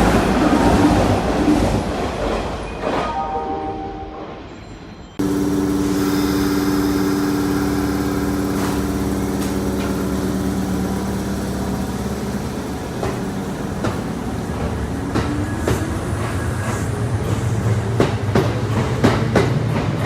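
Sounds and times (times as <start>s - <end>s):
electric train equipment hum: 5.2s - 20.0s.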